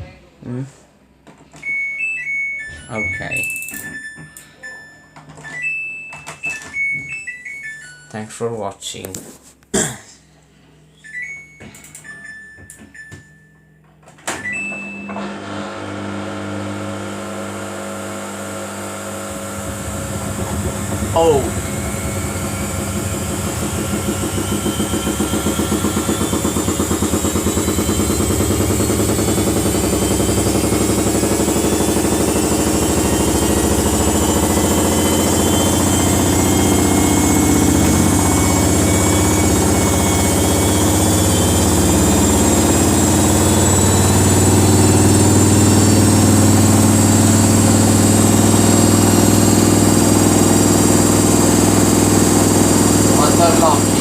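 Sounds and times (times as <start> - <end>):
washing machine motor whine: 14.2 - 54.0
drum pulsing: 18.8 - 54.0.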